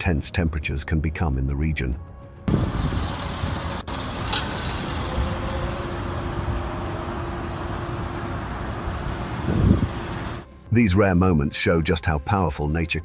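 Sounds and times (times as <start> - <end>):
road traffic: 2.2 - 10.8.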